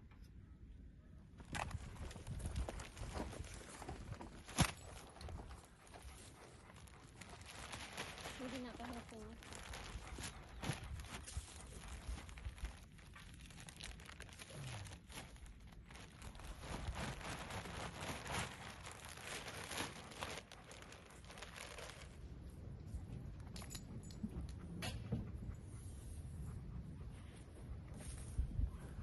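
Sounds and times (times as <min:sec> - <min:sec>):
wind buffeting microphone: 0:01.6 - 0:04.4, 0:22.2 - 0:29.0.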